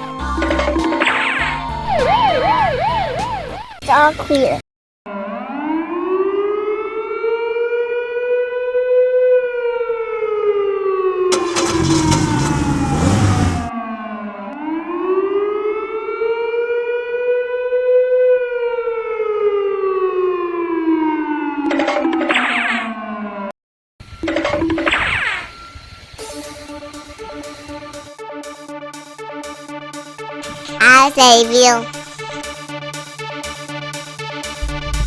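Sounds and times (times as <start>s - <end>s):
fire truck siren wailing: 1.7s - 3.8s, 5.1s - 21.6s.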